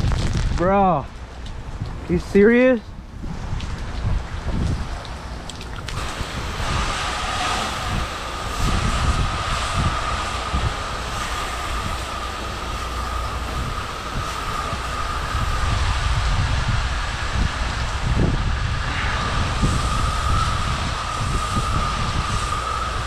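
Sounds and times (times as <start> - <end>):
wind rumble on microphone: 0.0 - 23.0
high whine: 4.6 - 23.0
pressure washer jet hissing: 5.9 - 23.0.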